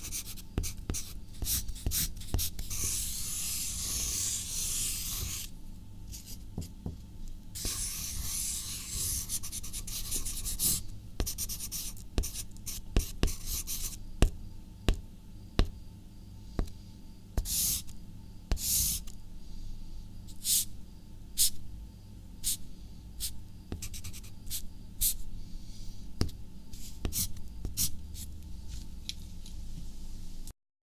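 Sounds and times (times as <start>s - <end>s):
pen scratching on paper: 0.0s - 5.5s, 7.6s - 14.0s, 17.4s - 17.8s, 18.5s - 19.0s, 23.7s - 25.2s.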